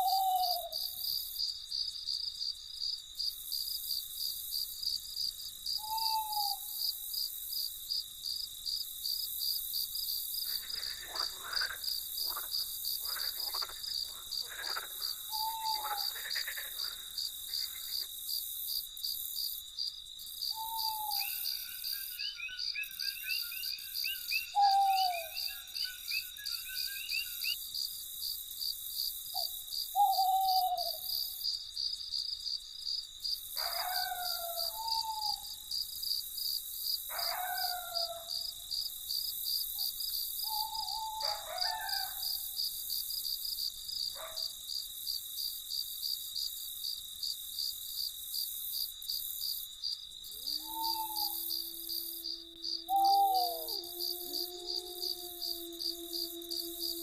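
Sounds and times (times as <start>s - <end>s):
crickets chirping: 0.0s - 57.0s
frogs croaking: 10.4s - 18.5s, 20.5s - 27.7s.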